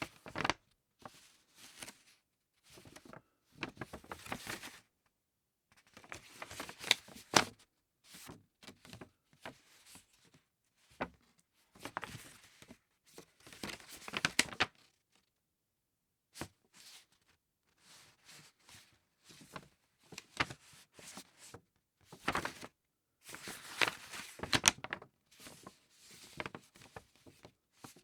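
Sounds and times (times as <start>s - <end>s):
thick paper rustling and crinkling: 0.2s - 0.5s, 22.2s - 22.7s, 23.3s - 25.0s, 26.3s - 27.3s.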